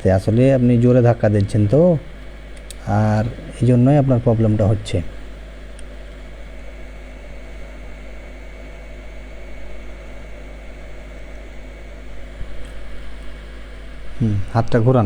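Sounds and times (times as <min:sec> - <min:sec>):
hot air gun blowing: 0:00.0 - 0:14.8.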